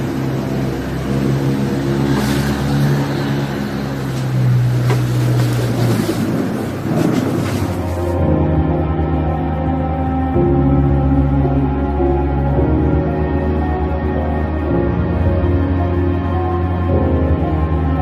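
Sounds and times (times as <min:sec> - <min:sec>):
rushing wind-like noise: 0:00.0 - 0:10.0
low droning hum: 0:00.0 - 0:18.0.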